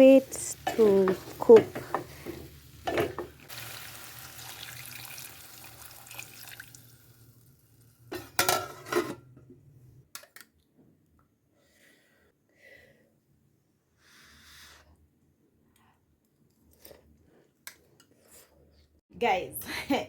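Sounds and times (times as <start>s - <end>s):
water hissing in frying pot: 0.0s - 7.9s
metal pot and utensil knocks: 2.9s - 3.3s, 8.1s - 9.2s.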